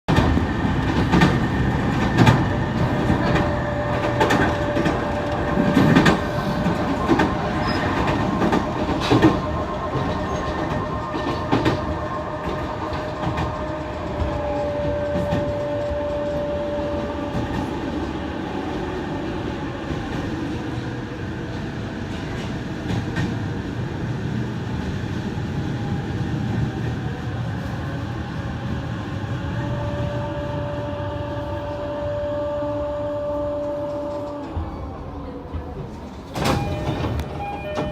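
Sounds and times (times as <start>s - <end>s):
train wheels clacking over rail joints: 0.1s - 17.8s.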